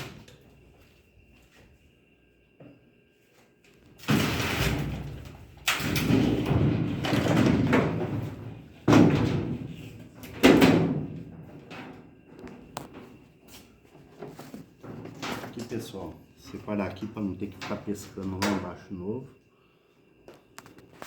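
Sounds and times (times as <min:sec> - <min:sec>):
heavy knocks of washing machine: 0:04.0 - 0:12.0.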